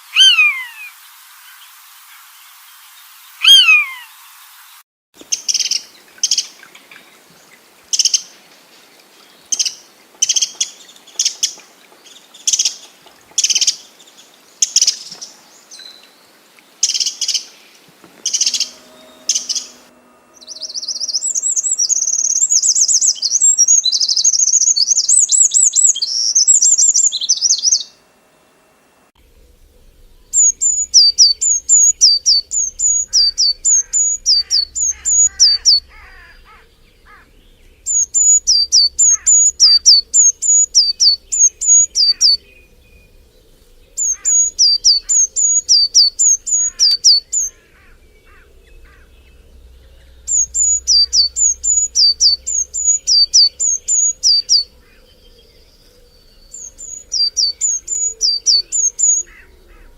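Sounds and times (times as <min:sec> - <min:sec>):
short bird chirps: 0:00.0 - 0:00.9, 0:03.4 - 0:04.1
fast warbling birdsong: 0:00.0 - 0:01.8, 0:03.3 - 0:04.1, 0:05.2 - 0:28.0, 0:29.3 - 0:59.9
bird falling whistle: 0:00.2 - 0:00.7, 0:03.4 - 0:03.9
run of short falling bird notes: 0:03.4 - 0:04.1.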